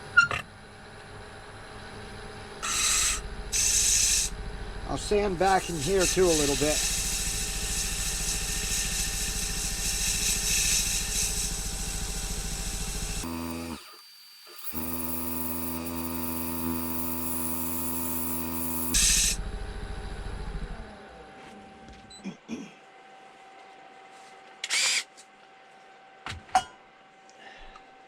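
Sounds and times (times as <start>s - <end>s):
sandpaper hissing on spinning wood: 5.2s - 13.8s, 14.5s - 19.4s
lathe motor hum: 11.0s - 20.9s.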